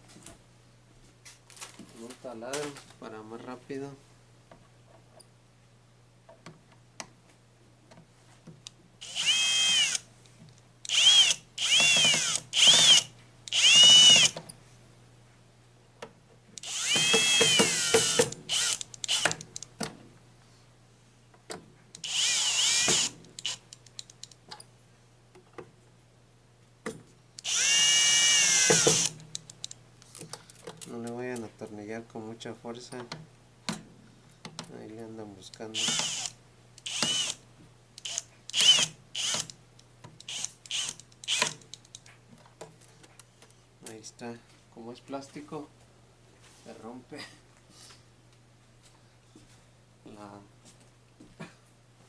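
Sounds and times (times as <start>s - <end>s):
electric drill driving screws: 9.0s - 10.0s, 10.9s - 14.4s, 16.6s - 19.4s, 22.0s - 23.6s, 27.4s - 29.2s, 35.8s - 37.4s, 38.0s - 39.5s, 40.3s - 41.6s.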